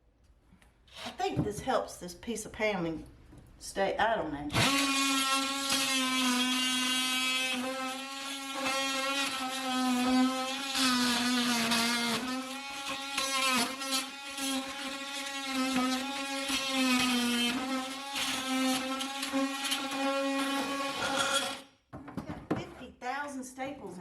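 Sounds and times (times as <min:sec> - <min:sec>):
power tool cutting paneling: 0:00.9 - 0:01.2, 0:04.5 - 0:21.7.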